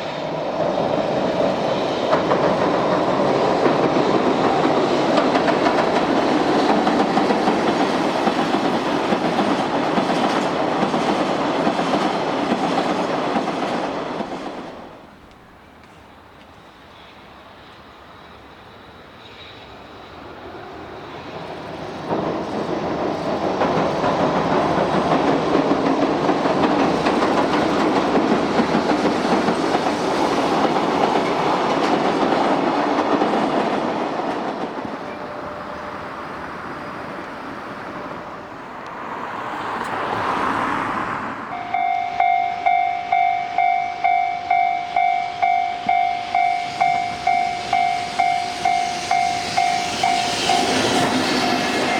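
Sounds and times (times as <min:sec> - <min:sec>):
train rumbling past: 0:00.0 - 0:51.9
level-crossing warning bell: 0:41.5 - 0:51.9.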